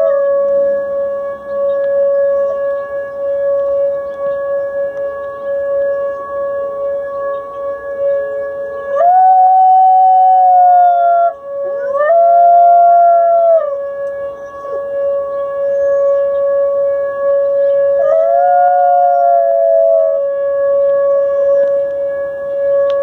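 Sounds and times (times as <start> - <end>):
dog howling: 0.0 - 0.8, 8.8 - 13.9, 17.4 - 22.0.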